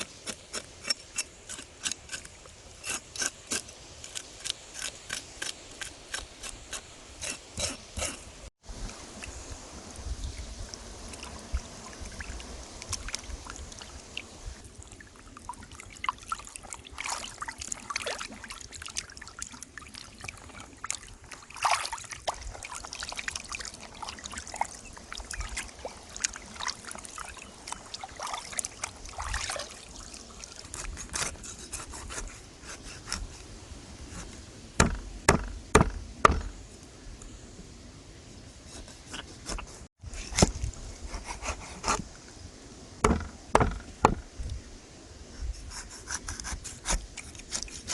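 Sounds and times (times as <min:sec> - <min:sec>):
water trickling: 0:08.8 - 0:30.7
heavy knocks: 0:43.0 - 0:44.2.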